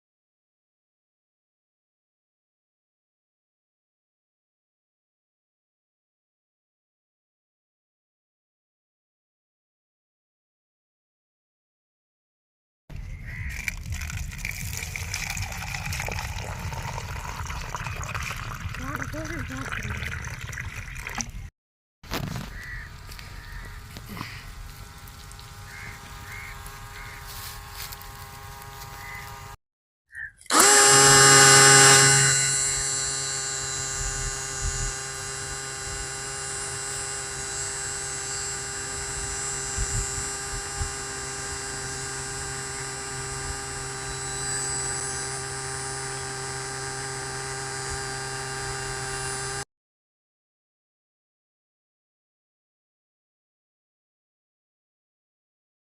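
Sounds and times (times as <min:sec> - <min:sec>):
small electric motor humming: 0:12.9 - 0:21.5, 0:22.1 - 0:29.6, 0:30.4 - 0:49.7.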